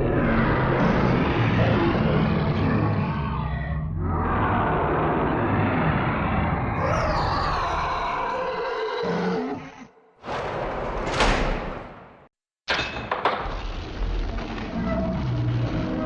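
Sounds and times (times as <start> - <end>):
sharp knocks: 10.2 - 13.5.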